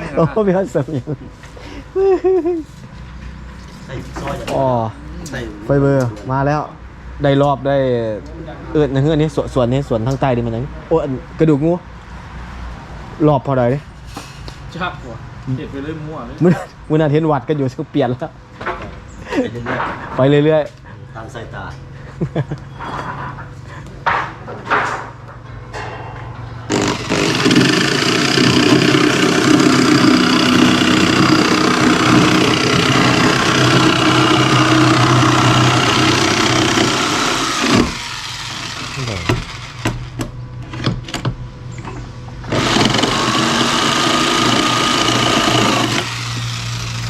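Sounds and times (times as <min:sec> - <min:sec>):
motor running loudly: 0:26.7 - 0:40.1, 0:42.4 - 0:47.0.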